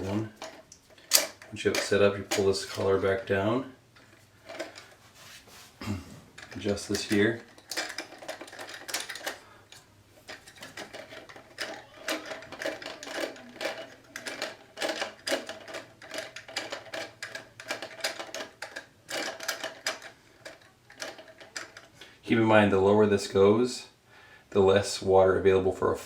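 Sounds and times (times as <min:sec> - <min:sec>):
plastic valve parts clicking: 0:00.0 - 0:03.3, 0:06.4 - 0:21.9.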